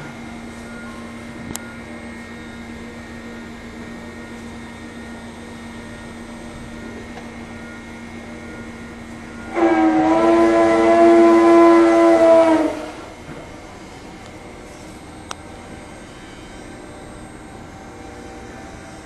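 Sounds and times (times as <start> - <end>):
cnc router humming: 0.0 - 19.0
router howling cutting styrofoam: 9.6 - 13.2.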